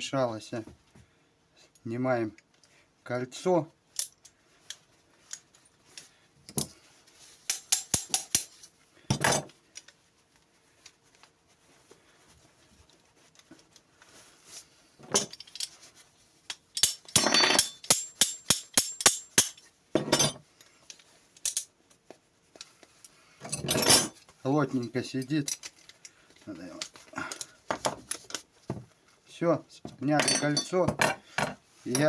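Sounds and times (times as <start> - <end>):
metal clicks and clinks: 16.5 - 20.4.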